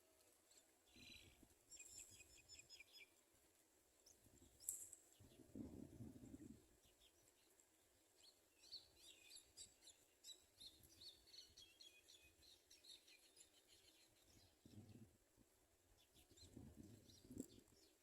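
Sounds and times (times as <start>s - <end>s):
sparrows chirping: 0.5s - 3.2s, 6.2s - 15.1s, 15.9s - 18.0s.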